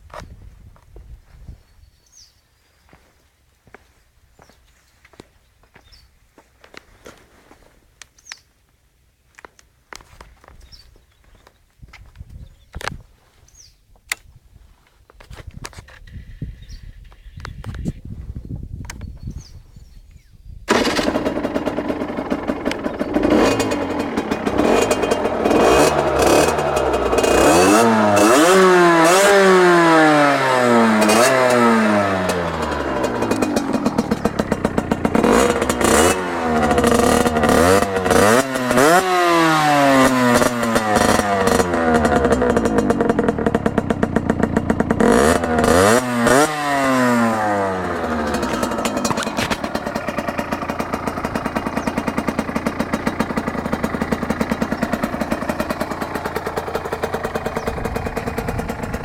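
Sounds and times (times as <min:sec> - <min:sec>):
two-stroke engine idling and revving: 0:20.7 - 0:59.0.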